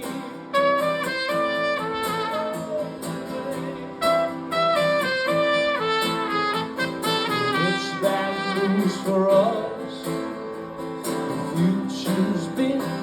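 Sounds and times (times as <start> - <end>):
guitar chords: 0.0 - 13.0
brass horn melody: 0.4 - 9.6.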